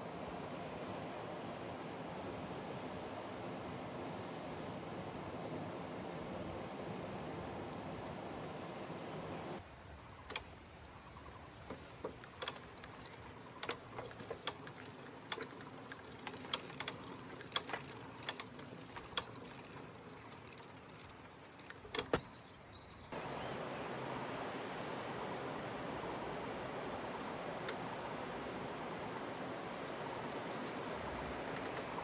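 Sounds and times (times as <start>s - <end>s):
light clicks and taps: 11.6s - 22.3s.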